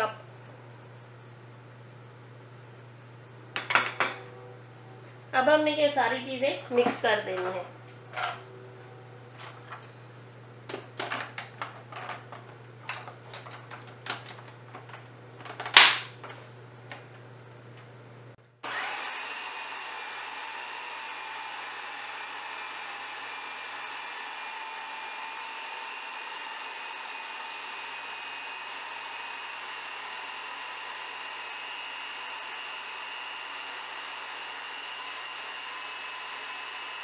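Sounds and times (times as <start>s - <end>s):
food processor motor running: 18.6s - 37.0s.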